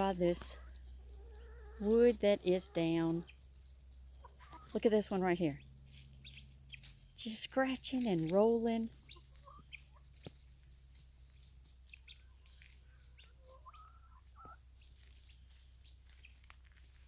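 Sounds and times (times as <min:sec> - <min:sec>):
faint chicken calls: 0:00.5 - 0:04.8, 0:08.9 - 0:17.0.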